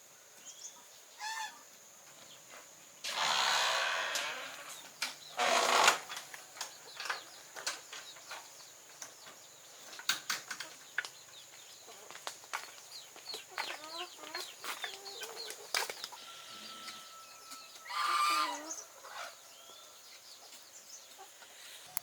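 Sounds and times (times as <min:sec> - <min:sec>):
chickens clucking: 0:06.0 - 0:22.0.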